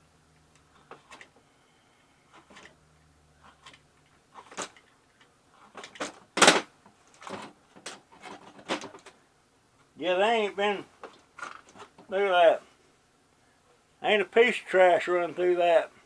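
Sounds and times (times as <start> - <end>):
plastic parts clicking and knocking: 0.5 - 1.4, 2.4 - 2.8, 4.4 - 9.2, 11.0 - 12.1.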